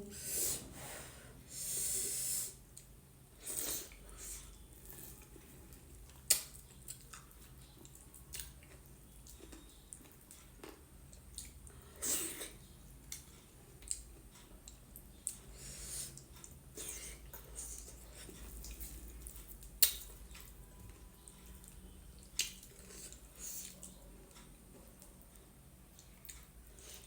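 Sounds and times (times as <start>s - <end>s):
wet chewing and slurping: 21.2s - 24.5s.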